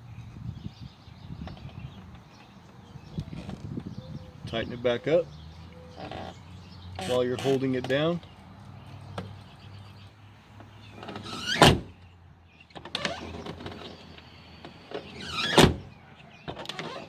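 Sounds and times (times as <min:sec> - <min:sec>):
car door slamming: 0:11.1 - 0:11.9, 0:15.1 - 0:15.9.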